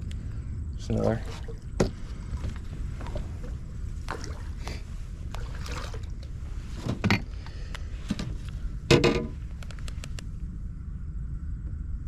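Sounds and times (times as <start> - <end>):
steady low rumble: 0.0 - 12.0
fish knocking in a boat: 1.3 - 6.3.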